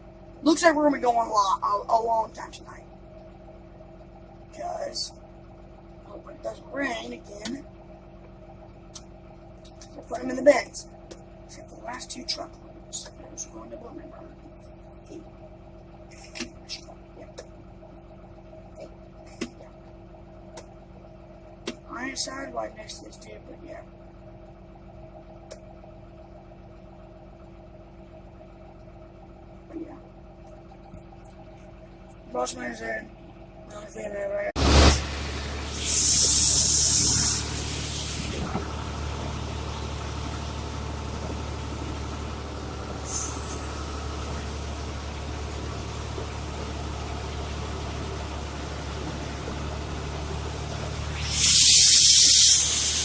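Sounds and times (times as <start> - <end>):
loud hiss: 34.6 - 38.6, 43.0 - 44.4, 51.0 - 53.0
tractor engine idling: 34.6 - 53.0.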